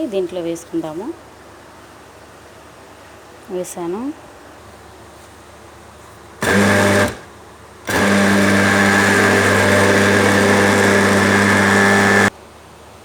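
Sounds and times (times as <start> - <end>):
mixer grinder motor whine: 6.4 - 12.3.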